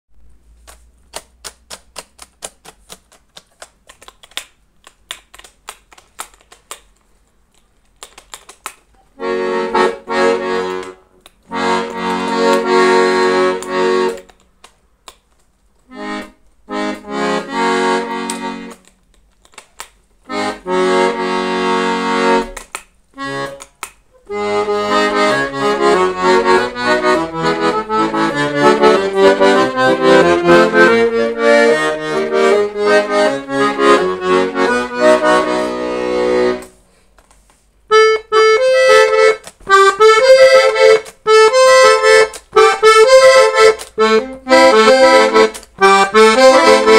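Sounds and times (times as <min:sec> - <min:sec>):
accordion clicks: 0:00.6 - 0:46.9
accordion chords: 0:09.1 - 0:14.4, 0:15.8 - 0:18.9, 0:20.2 - 0:36.9, 0:37.8 - 0:46.9
accordion tune: 0:09.1 - 0:14.4, 0:15.8 - 0:18.9, 0:20.2 - 0:36.9, 0:37.8 - 0:46.9.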